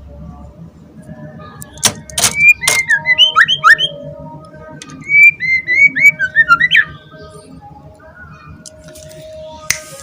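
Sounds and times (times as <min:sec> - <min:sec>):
bird whistling song: 0:02.2 - 0:04.1, 0:04.9 - 0:07.6.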